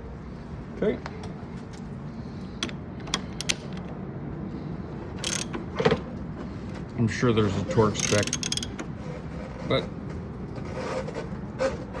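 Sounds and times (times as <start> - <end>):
ratchet wrench clicking: 5.2 - 5.6, 8.0 - 8.8.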